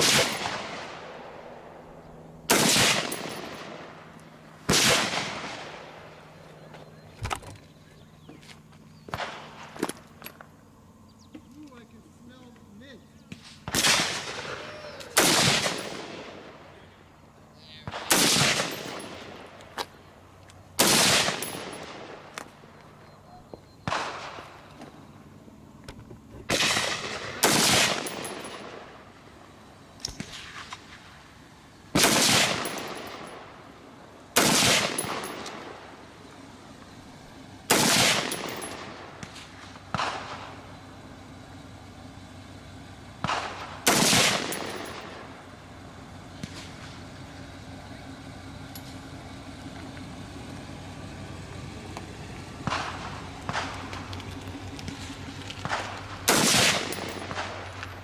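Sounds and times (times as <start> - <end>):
gunshots with echo: 0.0 - 1.4, 2.5 - 4.0, 4.7 - 6.2, 13.4 - 16.6, 17.8 - 19.5, 20.8 - 22.2, 26.5 - 28.8, 32.0 - 33.5, 34.4 - 35.8, 37.7 - 40.6, 43.2 - 45.2, 55.6 - 57.7.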